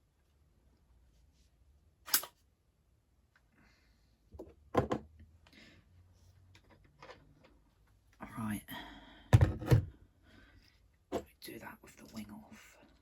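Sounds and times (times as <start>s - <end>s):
plastic parts knocking: 4.4s - 5.1s, 9.4s - 9.9s.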